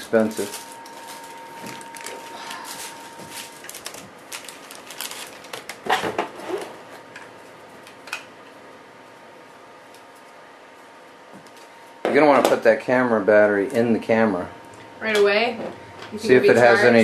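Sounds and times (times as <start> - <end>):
plastic packaging crinkling: 0.0 - 8.2.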